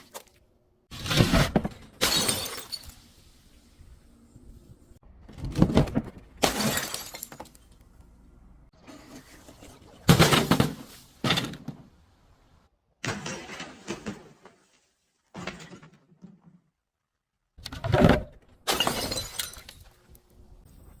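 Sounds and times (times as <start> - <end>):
glass bottles shattering: 2.0 - 3.2, 6.4 - 7.6, 18.6 - 19.9.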